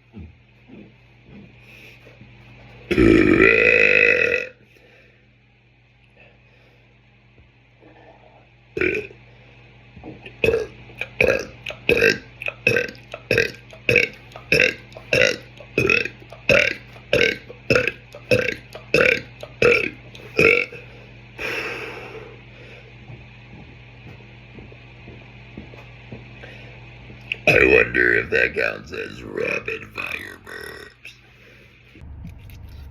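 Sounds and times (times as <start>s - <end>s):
man burping: 2.9s - 4.6s, 8.8s - 9.2s, 10.2s - 20.9s, 27.3s - 31.1s
breathy exhale: 20.8s - 22.9s.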